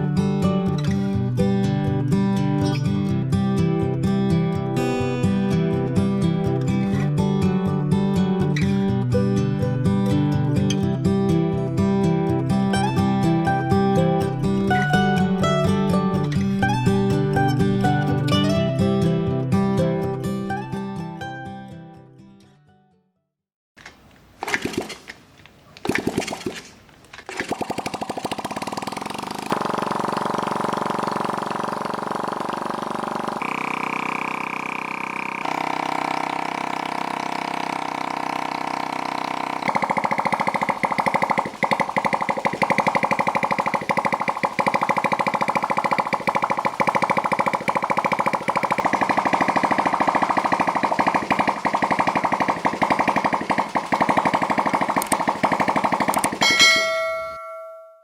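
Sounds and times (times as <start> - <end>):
fast busy rhythm: 39.8 - 56.4.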